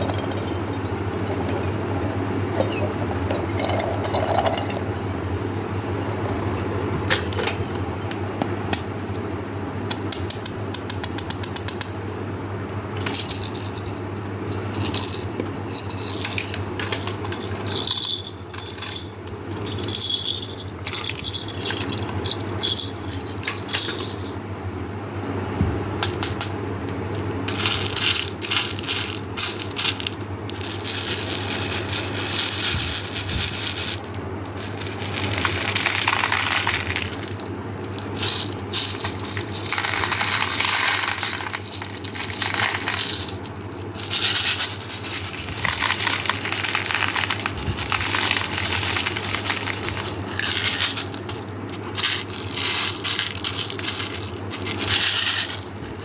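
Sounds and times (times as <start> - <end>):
hard candies clattering and crunching: 13.0 - 24.3, 27.5 - 56.0.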